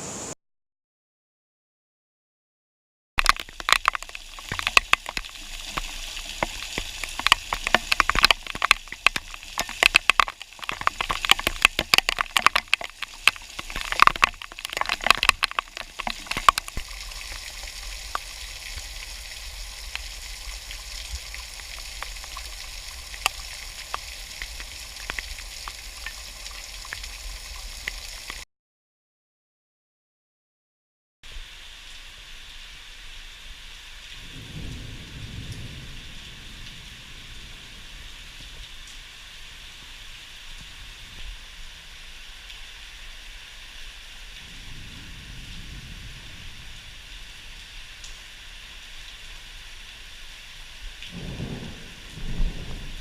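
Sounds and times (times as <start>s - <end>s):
drips: 3.2s - 28.4s
heavy rain: 3.2s - 28.4s, 31.3s - 53.0s.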